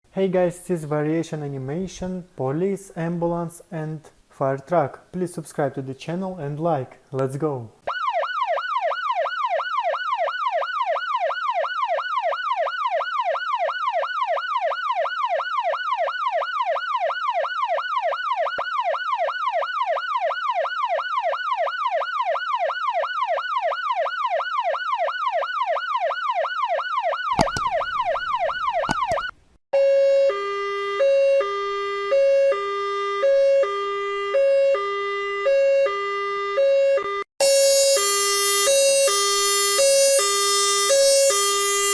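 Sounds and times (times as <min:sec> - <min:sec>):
two-tone hi-lo siren: 0:07.9 - 0:41.9
electronic siren fast yelp: 0:37.4 - 0:41.9.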